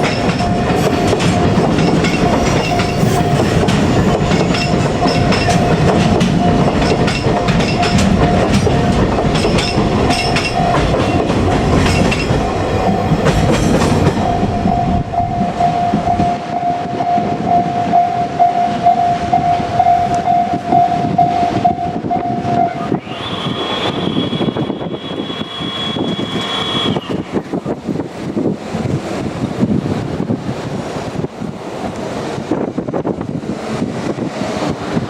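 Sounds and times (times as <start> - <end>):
train wheels clicking over rail joints: 0.0 - 17.1
level crossing bell ringing: 14.2 - 22.9.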